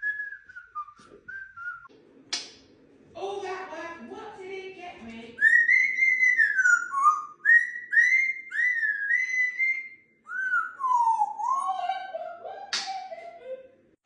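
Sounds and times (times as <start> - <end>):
parrot whistling: 5.4 - 12.1.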